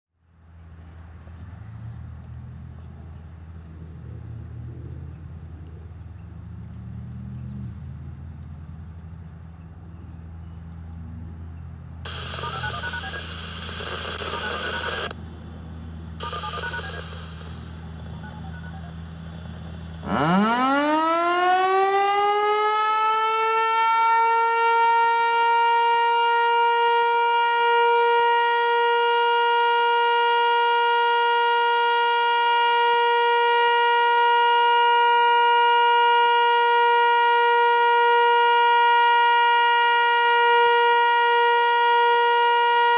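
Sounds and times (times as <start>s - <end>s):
low steady hum: 0.2s - 21.4s
tornado siren steady tone: 12.0s - 42.9s
short bursts of electronic tones: 12.1s - 15.1s, 16.2s - 18.9s.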